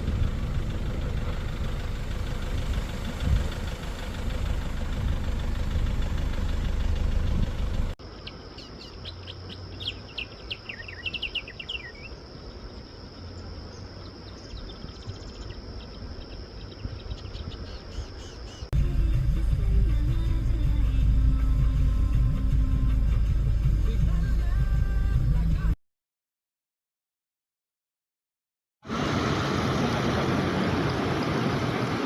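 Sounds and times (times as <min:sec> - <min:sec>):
vehicle engine rumbling: 0:00.0 - 0:10.7, 0:12.2 - 0:25.8, 0:28.9 - 0:32.0
insect drone: 0:00.1 - 0:23.8
bird chirps: 0:07.2 - 0:18.7.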